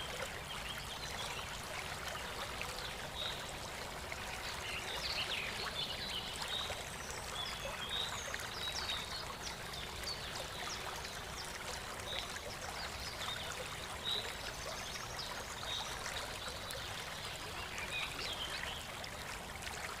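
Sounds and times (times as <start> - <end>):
water trickling: 0.0 - 20.0.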